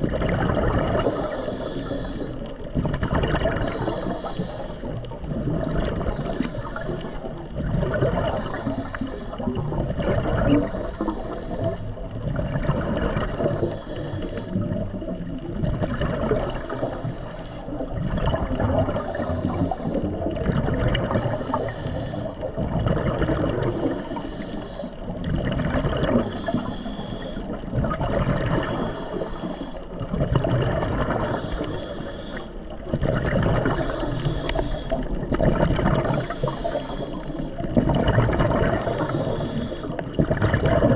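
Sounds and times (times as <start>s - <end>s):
air bubbles: 0.0s - 40.9s
low water sloshing: 0.0s - 40.9s
underwater rush of water: 0.0s - 40.9s.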